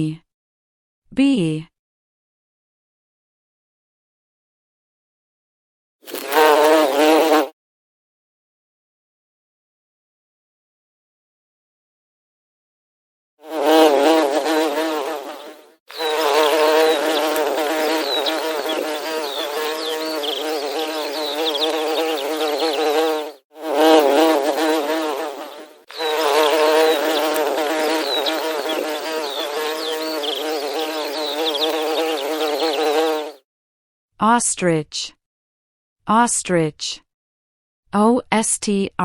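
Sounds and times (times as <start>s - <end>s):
bees buzzing: 6.1s - 7.5s, 13.4s - 33.4s.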